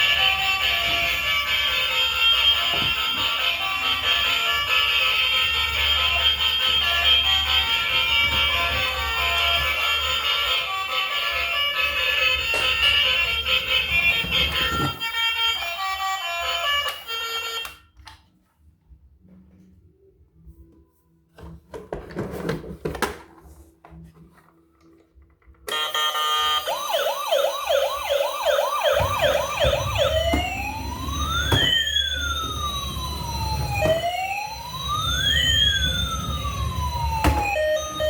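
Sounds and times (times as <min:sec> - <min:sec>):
toy electronic siren: 0:00.0 - 0:17.8, 0:25.7 - 0:38.0.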